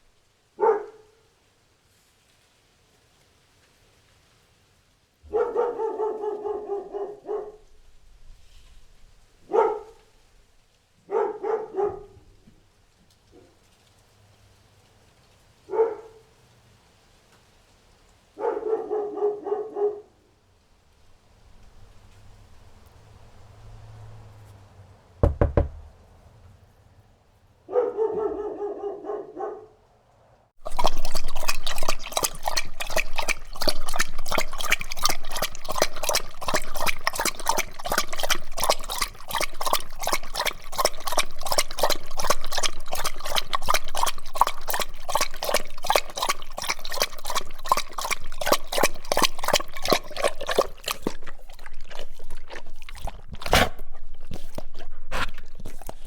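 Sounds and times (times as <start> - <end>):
dog barking: 0.6 - 1.3, 5.2 - 7.7, 9.4 - 10.1, 11.0 - 12.4, 15.7 - 16.3, 18.4 - 20.2, 27.7 - 29.8
dog lapping water: 30.6 - 56.0.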